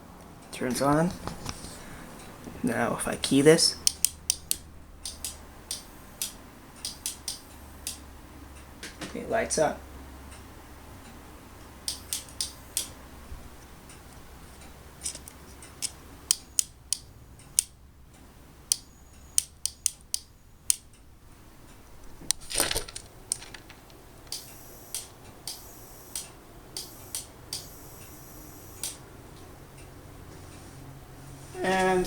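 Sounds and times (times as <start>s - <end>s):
switch clicking: 3.8s - 8.7s, 11.8s - 13.0s, 15.1s - 17.8s, 18.7s - 21.0s, 24.2s - 27.7s, 28.8s - 29.0s
faint high whine: 24.4s - 26.2s, 26.8s - 29.0s.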